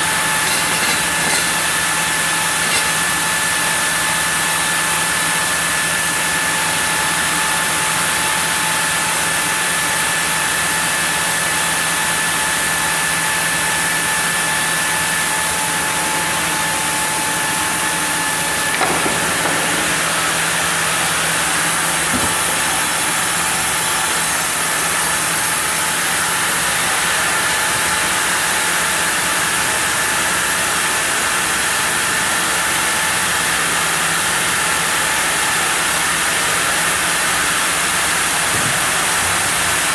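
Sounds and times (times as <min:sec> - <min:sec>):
sawmill saw whining: 0:00.0 - 0:04.8, 0:14.7 - 0:27.3
knock: 0:22.1 - 0:22.7.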